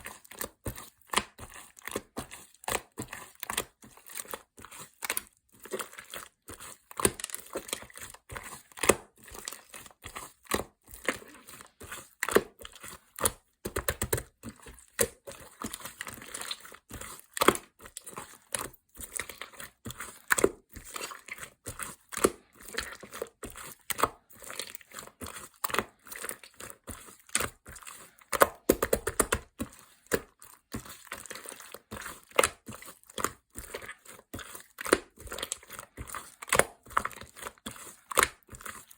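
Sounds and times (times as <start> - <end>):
crackling crinkling handling: 0.3 - 13.3.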